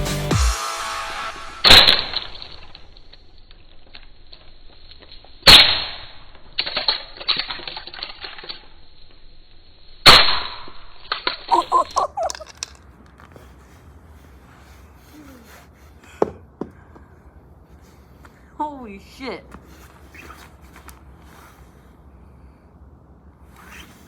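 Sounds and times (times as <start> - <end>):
loud sharp impacts: 0.4 - 2.9
broken pieces clattering: 6.3 - 8.8, 11.0 - 13.2.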